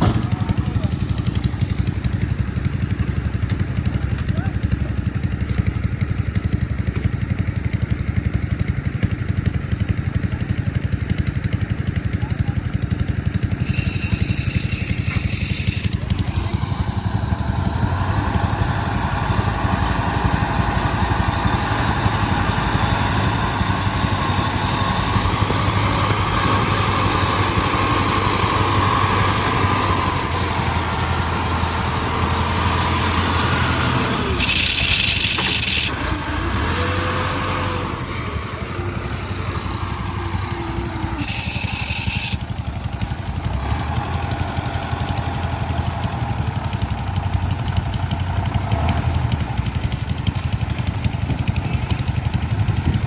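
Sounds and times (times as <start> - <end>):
farm machine engine running: 0.0 - 53.0.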